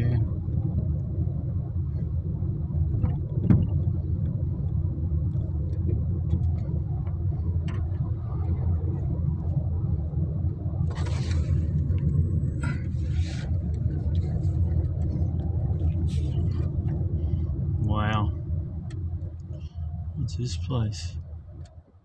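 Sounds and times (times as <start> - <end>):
car engine and tyre noise: 0.0 - 22.0.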